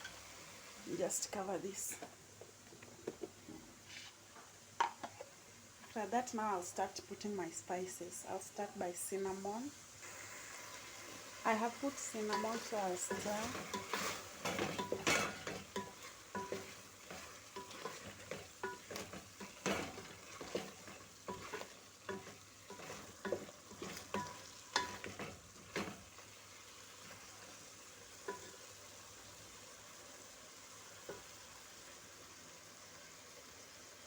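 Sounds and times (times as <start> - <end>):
faint sizzle from pot: 0.0 - 34.0
stick stirring a pot: 12.1 - 26.3, 28.2 - 28.6.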